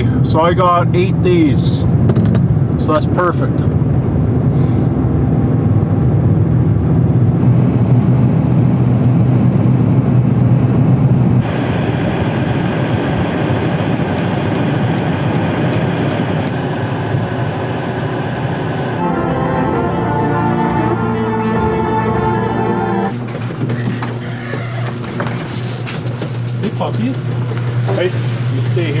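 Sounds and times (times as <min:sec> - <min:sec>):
road and wind rush: 0:00.0 - 0:19.0
engine and road hum: 0:00.0 - 0:19.1, 0:23.0 - 0:29.0.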